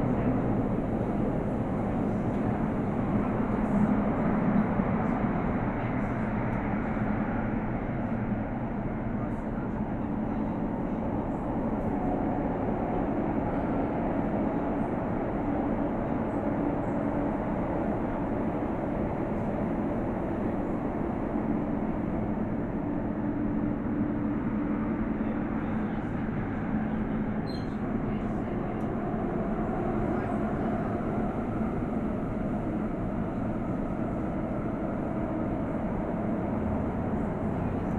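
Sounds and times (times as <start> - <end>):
constant low hum: 0.0 - 37.9
faint brief squeak: 27.4 - 27.8.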